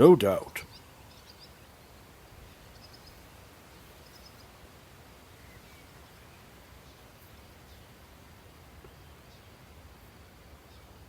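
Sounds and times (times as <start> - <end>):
distant bird chirps: 0.0 - 1.8, 2.4 - 3.3, 4.0 - 4.6
steady low hiss: 0.0 - 11.0.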